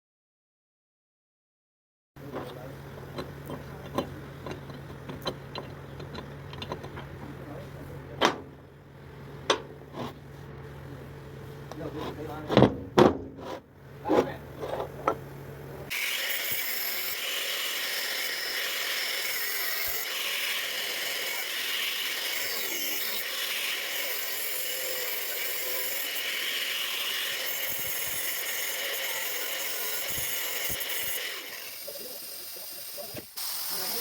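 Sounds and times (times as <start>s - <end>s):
welding arc crackling hiss: 15.9s - 34.0s.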